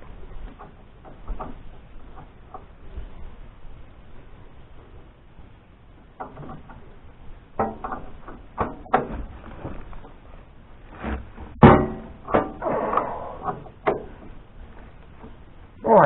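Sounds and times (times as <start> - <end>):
metal clanks and knocks: 7.6 - 9.8, 11.5 - 14.4.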